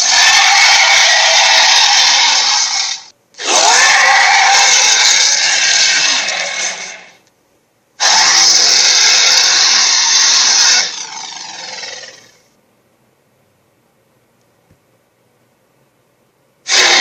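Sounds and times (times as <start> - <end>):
loud harsh grating call: 0.0 - 7.2, 8.0 - 12.4, 16.7 - 17.0.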